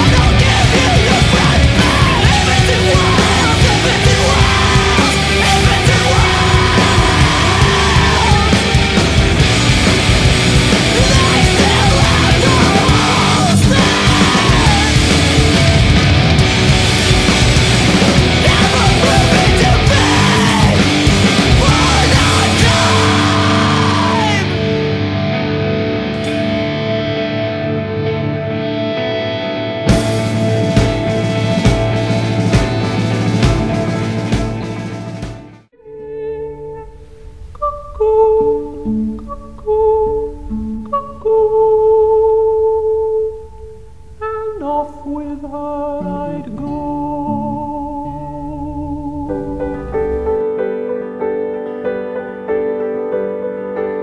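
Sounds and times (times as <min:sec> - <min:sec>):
heavy rock music: 0:00.0 - 0:51.3
soft low accompaniment: 0:35.8 - 0:51.0.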